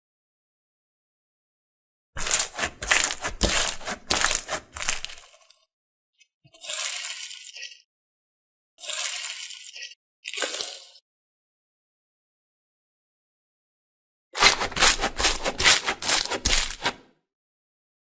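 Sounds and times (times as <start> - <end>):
slime squished by hand: 2.2 - 5.2, 14.4 - 17.0.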